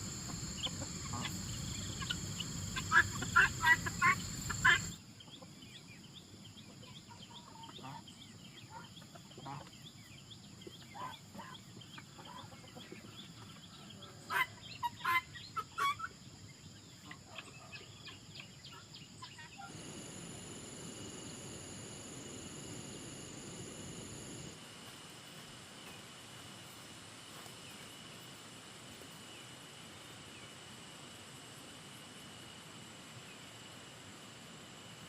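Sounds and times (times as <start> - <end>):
chickens clucking: 0.0 - 5.5.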